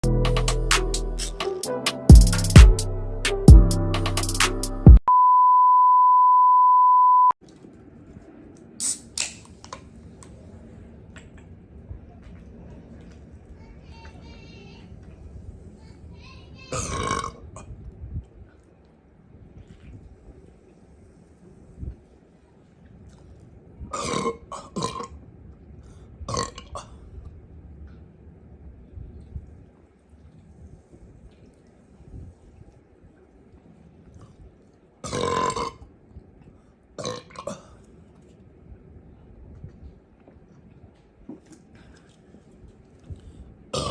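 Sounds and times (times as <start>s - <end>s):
music with drum beat: 0.0s - 5.0s
electronic beep tone: 5.0s - 7.4s.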